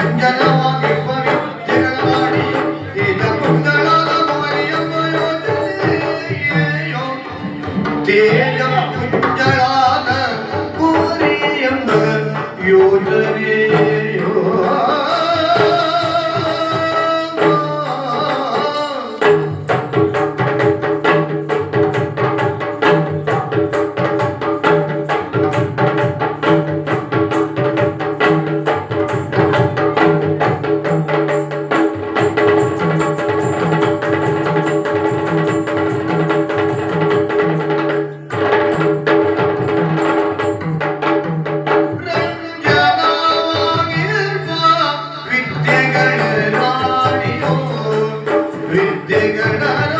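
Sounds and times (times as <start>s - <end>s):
person singing: 0.0s - 19.7s, 42.0s - 49.9s
fast hand-drumming: 0.0s - 49.9s.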